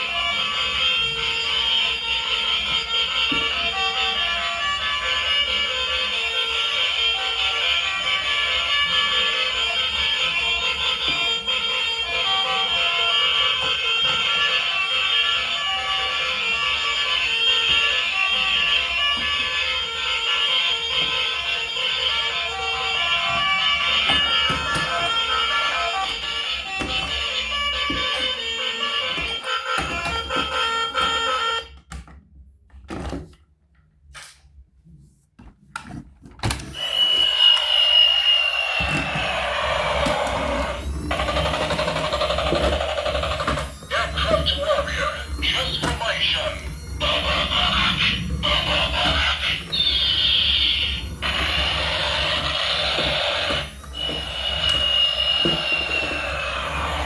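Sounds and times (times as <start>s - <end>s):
tinny electronic toy tune: 0.0s - 31.8s, 36.6s - 57.0s
steady high electronic tone: 36.7s - 57.0s.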